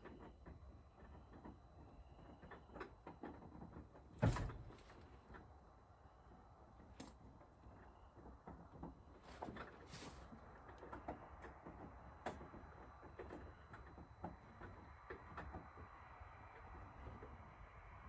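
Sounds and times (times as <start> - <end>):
faint clicks and handling knocks: 0.0 - 5.5, 6.3 - 16.0
door shutting with heavy thud: 4.2 - 4.8.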